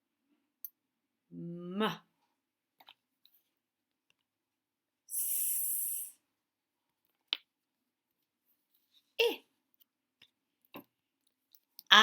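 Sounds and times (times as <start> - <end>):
man making hissing s sound: 5.2 - 6.1.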